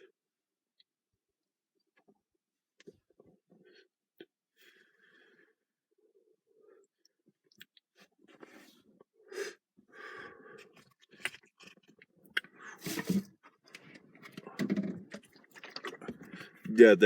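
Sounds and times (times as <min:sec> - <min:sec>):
person breathing: 0:04.6 - 0:06.9, 0:08.5 - 0:10.9.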